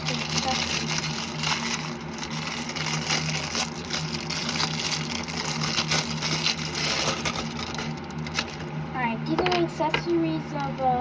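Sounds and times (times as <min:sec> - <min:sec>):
packaging crinkling and rustling: 0:00.0 - 0:08.8
steady low hum: 0:00.0 - 0:11.0.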